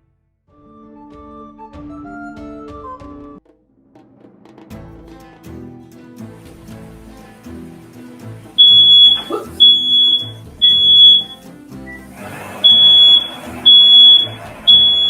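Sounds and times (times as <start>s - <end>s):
smoke alarm beeping: 8.6s - 12.0s, 12.6s - 15.0s.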